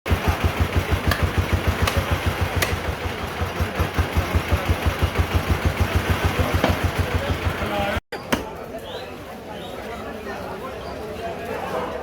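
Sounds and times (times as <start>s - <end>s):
engine idling with low thump: 0.1s - 8.0s
sharp knocks: 1.1s - 2.8s.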